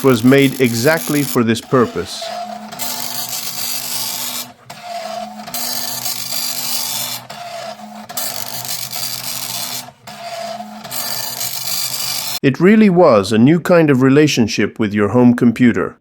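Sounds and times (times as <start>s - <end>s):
dot matrix printer printing: 0.0s - 12.4s.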